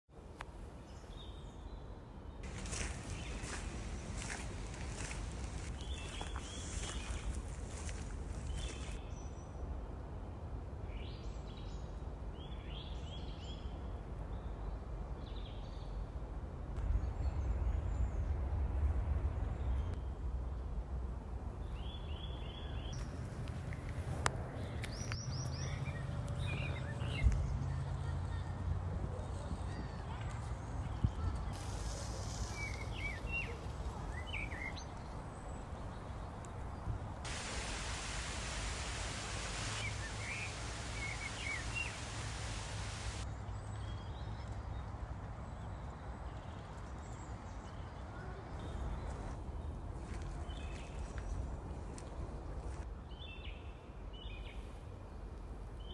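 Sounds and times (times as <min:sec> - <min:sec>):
birds calling: 0:02.4 - 0:09.0, 0:37.2 - 0:43.3
steady low rumble: 0:16.6 - 0:21.7
hiss: 0:31.5 - 0:33.0, 0:37.2 - 0:43.2
short bird chirps: 0:37.4 - 0:43.2.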